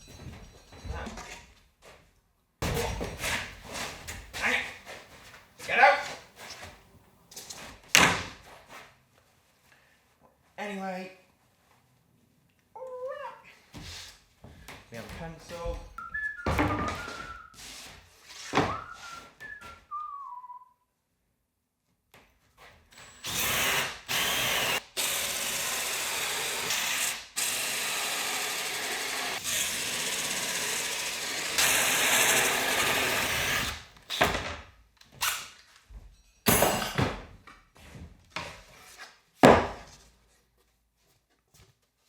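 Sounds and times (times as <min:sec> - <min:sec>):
person whistling: 0:16.0 - 0:17.6, 0:18.6 - 0:20.8
power drill boring holes: 0:22.9 - 0:34.4.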